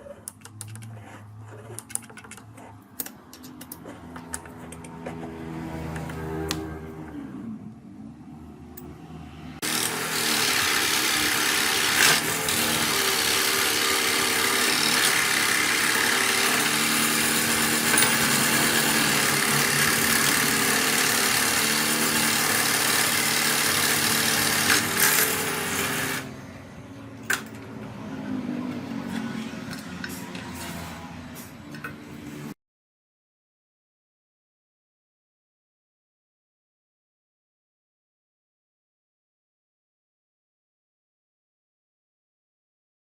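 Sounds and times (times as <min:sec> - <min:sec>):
power tool running: 0:09.6 - 0:26.5.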